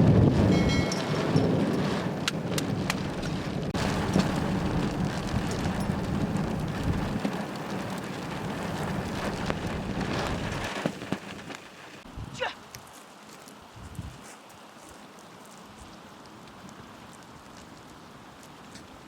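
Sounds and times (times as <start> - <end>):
heavy rain pouring: 0.0 - 12.6.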